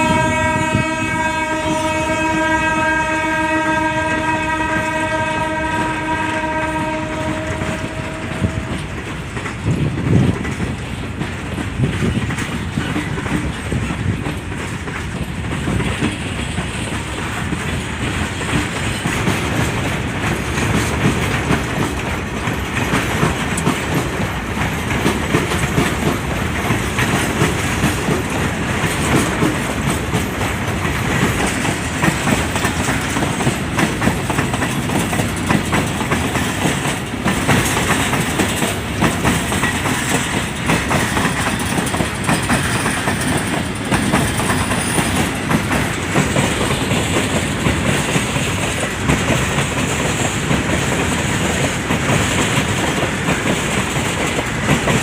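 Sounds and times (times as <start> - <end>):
locomotive horn blast: 0.0 - 8.8
train wheels clickety-clack: 0.0 - 55.0.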